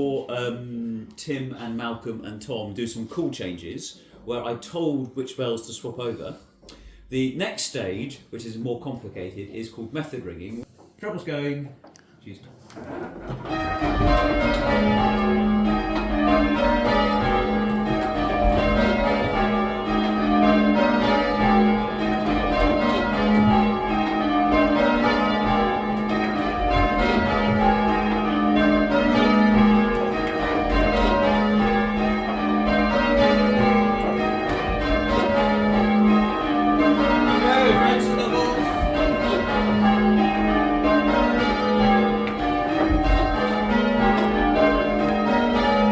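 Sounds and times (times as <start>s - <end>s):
church bells change ringing: 13.2s - 45.9s.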